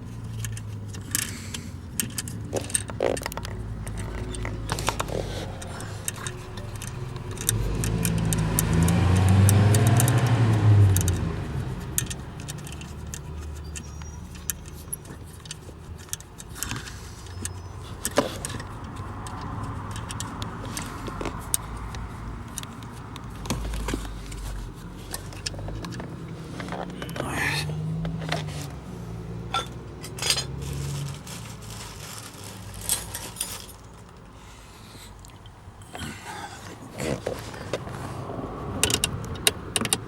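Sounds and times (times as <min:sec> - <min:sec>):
metallic clicks of tools and bolts: 0:00.0 - 0:28.8, 0:29.4 - 0:30.6, 0:38.8 - 0:40.0
low vehicle engine hum: 0:00.0 - 0:40.0.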